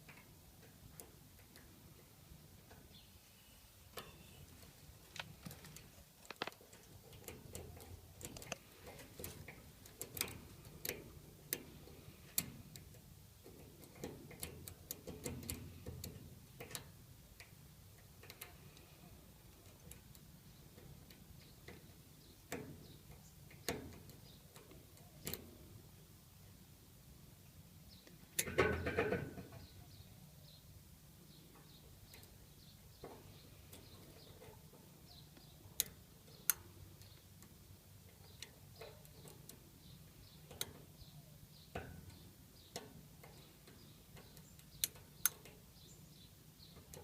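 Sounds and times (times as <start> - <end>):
lock pick clicking and scraping: 5.2 - 17.5, 40.2 - 45.9.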